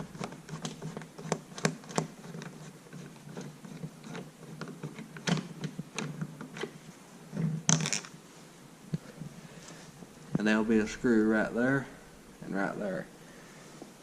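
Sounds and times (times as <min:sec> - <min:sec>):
screwdriver clicks and scrapes: 0:00.1 - 0:06.7.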